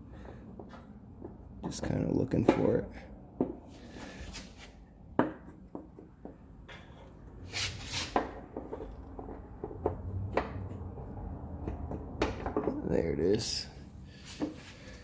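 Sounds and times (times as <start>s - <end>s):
sharp clicks and knocks: 8.1s - 12.9s.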